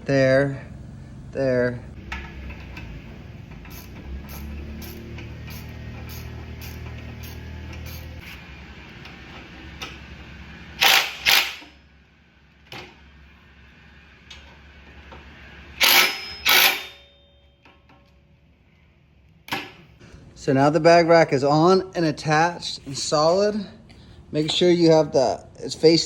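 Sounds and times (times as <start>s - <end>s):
impact tool bursts: 3.6s - 8.3s, 10.8s - 11.8s, 15.7s - 17.2s
power tool motor whirring: 3.7s - 8.4s, 10.8s - 11.6s, 15.8s - 17.0s.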